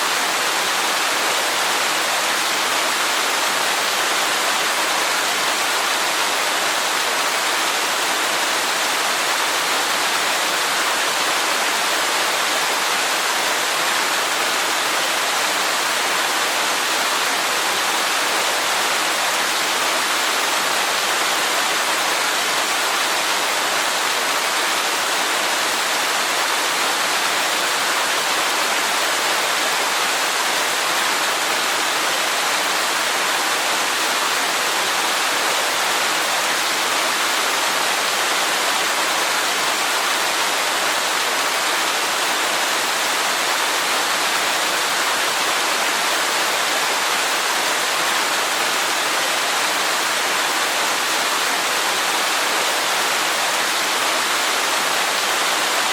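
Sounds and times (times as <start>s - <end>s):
waterfall rushing: 0.0s - 55.9s.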